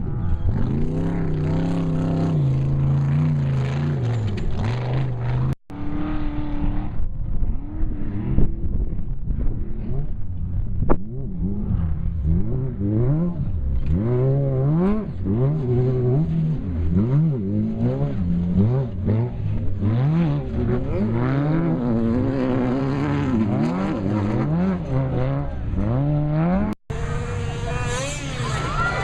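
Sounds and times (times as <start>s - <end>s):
engine revving hard: 11.3s - 29.0s.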